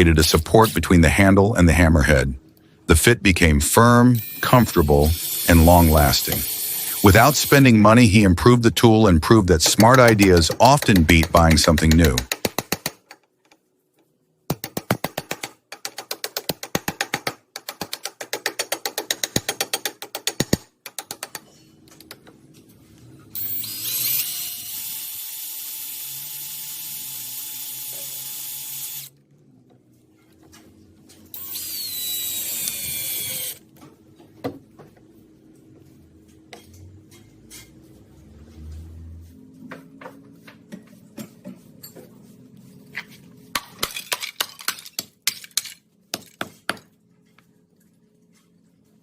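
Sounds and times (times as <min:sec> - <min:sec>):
high-pitched power tool running: 0:04.2 - 0:07.9, 0:23.4 - 0:29.1, 0:31.4 - 0:33.6
rapid regular clicks: 0:09.6 - 0:13.6.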